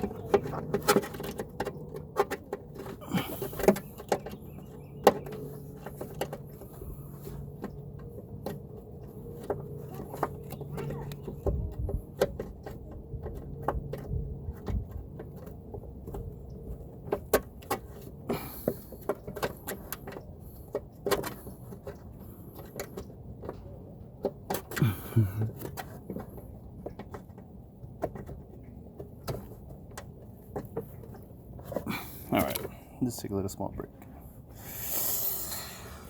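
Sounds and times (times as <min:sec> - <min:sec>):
short scrape: 0:34.6 - 0:36.0.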